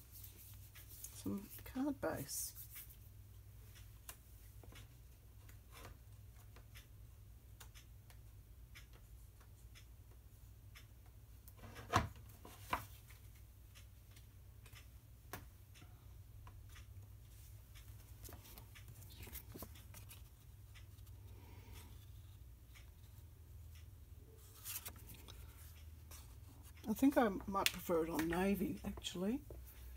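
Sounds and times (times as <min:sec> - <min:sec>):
paper rustling and shuffling: 0:18.2 - 0:20.4, 0:24.4 - 0:26.4.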